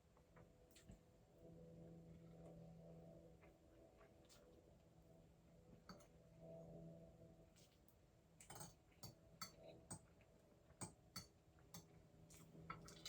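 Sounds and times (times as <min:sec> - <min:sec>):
faint room hum: 0:00.0 - 0:13.0
soft eating clicks and taps: 0:08.4 - 0:13.0.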